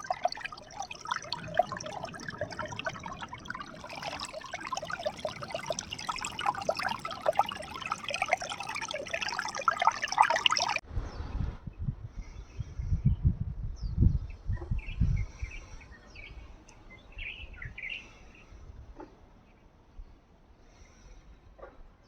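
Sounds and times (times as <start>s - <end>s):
water trickling and splashing: 0.0s - 10.8s.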